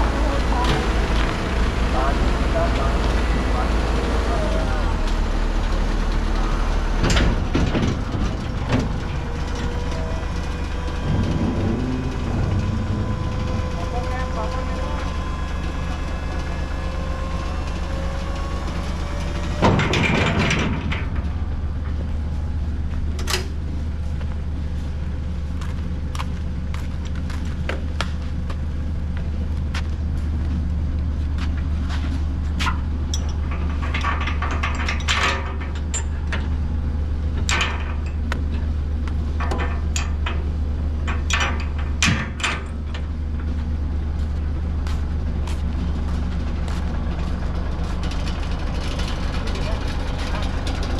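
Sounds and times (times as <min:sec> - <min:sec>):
heavy vehicle engine rumbling: 0:00.0 - 0:50.9
loud clatter: 0:05.8 - 0:22.0.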